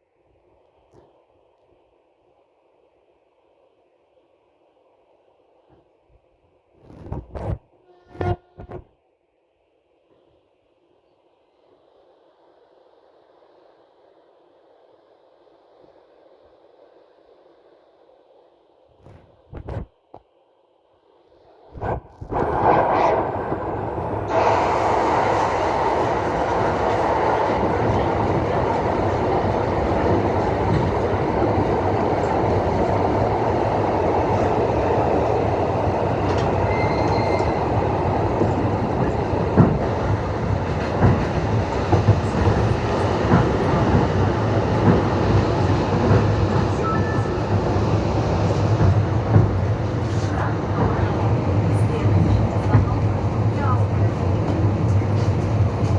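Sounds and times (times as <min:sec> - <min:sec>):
train running: 0:21.5 - 0:55.9.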